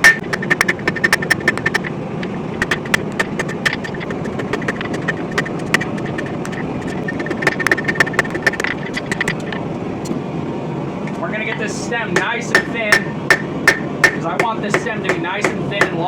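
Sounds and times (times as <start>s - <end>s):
steady rushing noise: 0.0s - 16.0s
hammer ringing on metal: 12.2s - 16.0s.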